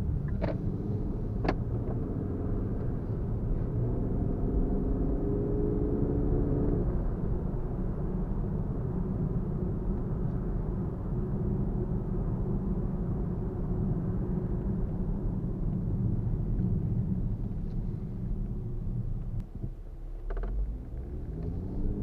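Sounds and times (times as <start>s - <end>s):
car engine rumble: 0.0s - 22.0s.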